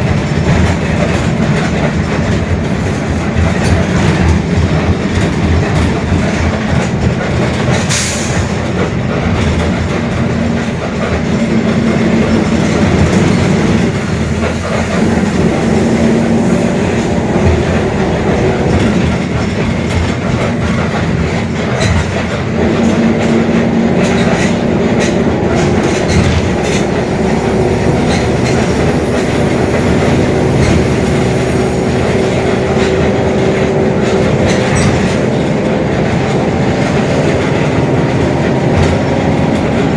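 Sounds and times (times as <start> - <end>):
bus diesel engine rumble: 0.0 - 39.9
differential droning whine: 25.5 - 34.8.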